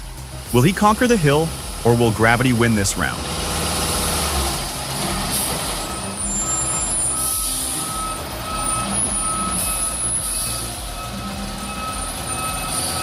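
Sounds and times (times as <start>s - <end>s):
diesel engine under load: 0.0s - 13.0s
reversing alarm beeping: 4.0s - 13.0s.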